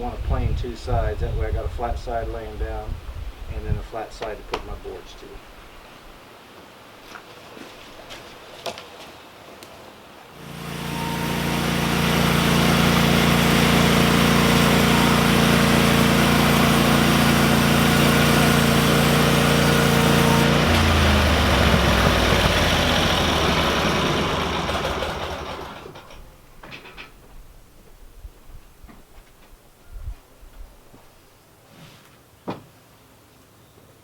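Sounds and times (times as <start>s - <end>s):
power planer planing wood: 10.4s - 26.1s.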